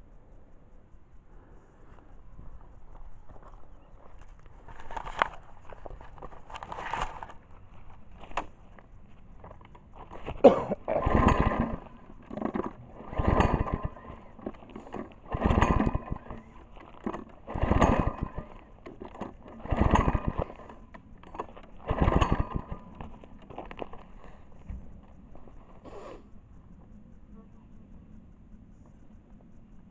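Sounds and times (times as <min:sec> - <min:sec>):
lawn mower engine cranking: 0:04.6 - 0:08.8, 0:09.4 - 0:26.1.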